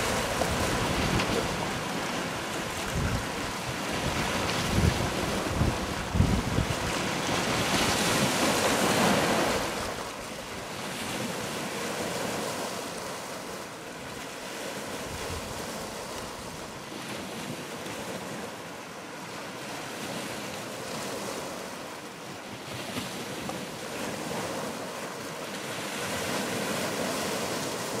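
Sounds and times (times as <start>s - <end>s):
wind buffeting microphone: 0.0s - 10.2s
surf: 0.0s - 28.0s.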